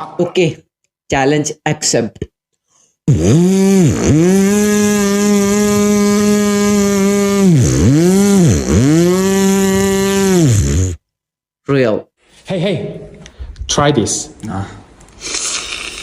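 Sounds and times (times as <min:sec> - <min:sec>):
beatboxer imitating a motor: 0:03.1 - 0:11.0.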